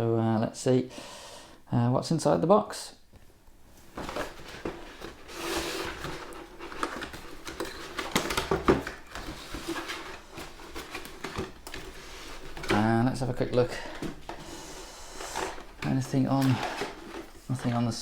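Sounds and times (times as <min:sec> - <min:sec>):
cardboard box rustling and scraping: 0:03.9 - 0:18.0.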